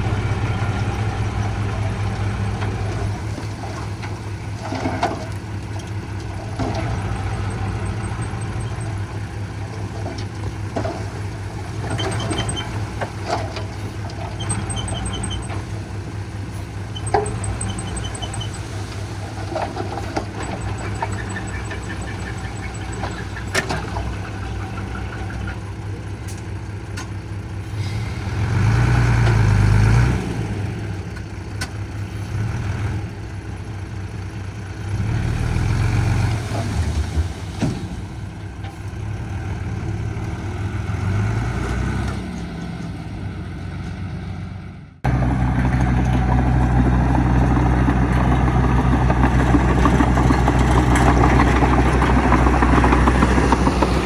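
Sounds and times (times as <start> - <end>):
heavy diesel engine running: 0.0 - 54.0
louder steady diesel engine: 0.0 - 54.0.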